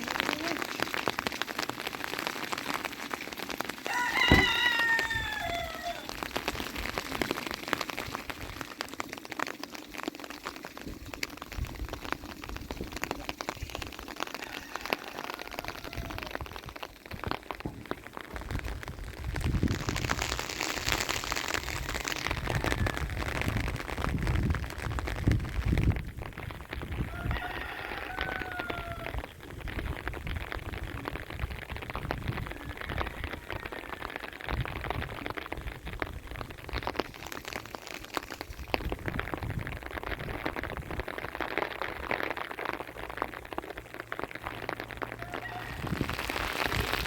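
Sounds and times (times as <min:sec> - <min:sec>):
rain pattering on surfaces: 0:00.0 - 0:47.0
sharp knock: 0:04.3 - 0:04.5.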